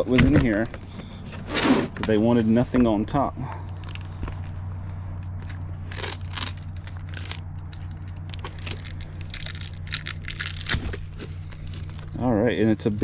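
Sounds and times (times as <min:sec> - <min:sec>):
steady low hum: 0:00.0 - 0:13.0
paper and cardboard crinkling: 0:03.6 - 0:12.2.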